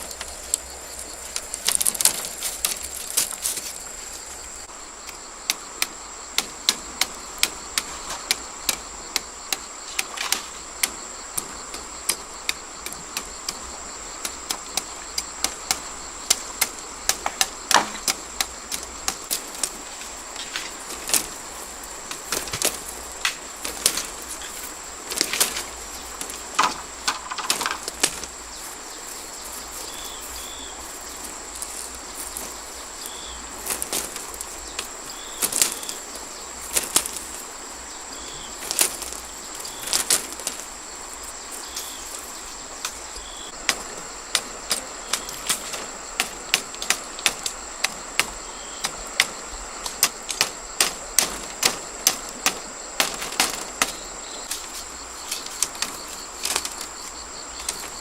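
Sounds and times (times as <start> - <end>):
high-pitched insect drone: 0.0 - 58.0
sharp knocks: 14.2 - 19.4, 43.6 - 54.0.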